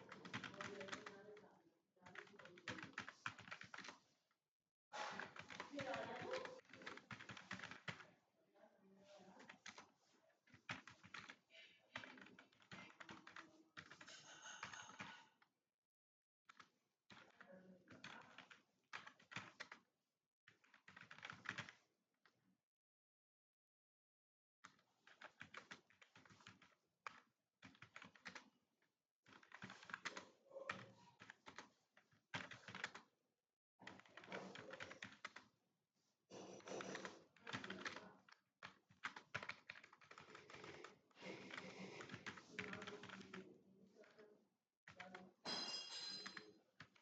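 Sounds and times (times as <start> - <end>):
typing on computer keyboard: 0.0 - 4.1, 5.0 - 8.1, 9.3 - 9.9, 10.5 - 15.3, 16.5 - 19.9, 20.5 - 21.8, 24.6 - 28.6, 29.3 - 33.1, 33.8 - 35.6, 36.3 - 43.4, 44.9 - 45.4, 46.2 - 47.0.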